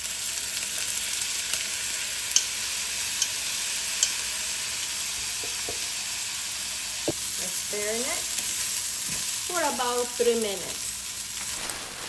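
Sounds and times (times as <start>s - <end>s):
rice and onion sizzling in oil: 0.0s - 12.0s
utensil clicking against pan: 3.2s - 3.4s.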